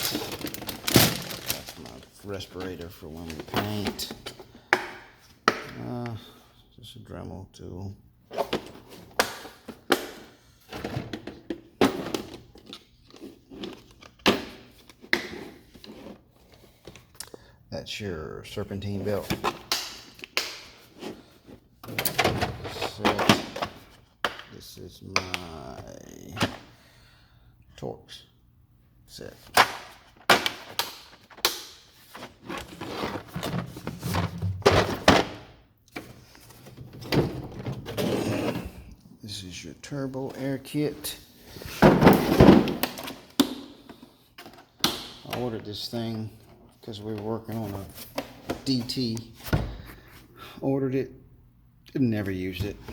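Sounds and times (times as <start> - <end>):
tools rattling and rustling: 0.0 - 4.5, 29.6 - 38.8.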